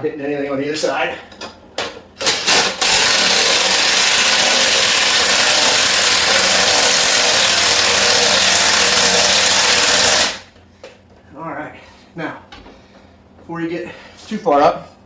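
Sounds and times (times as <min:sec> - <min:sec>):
powered jack running: 0:02.2 - 0:10.5.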